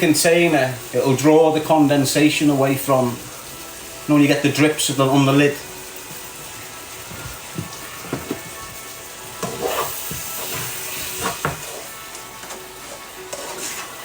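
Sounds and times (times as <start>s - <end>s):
food sizzling in a frying pan: 0.0s - 14.0s
kitchen utensils clattering: 7.1s - 11.9s.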